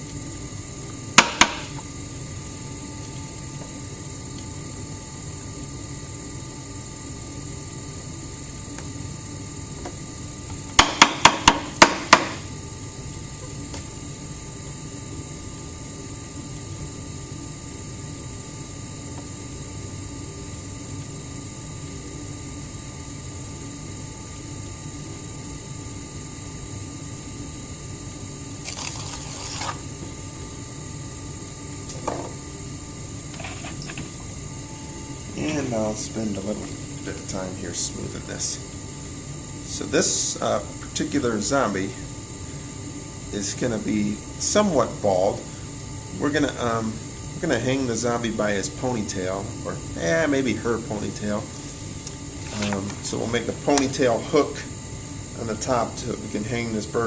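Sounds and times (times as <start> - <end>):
pottery wheel humming: 0.0 - 57.0
sharp knocks: 10.8 - 12.4
tool scraping spinning clay: 28.6 - 29.9, 33.3 - 34.1, 52.3 - 54.6.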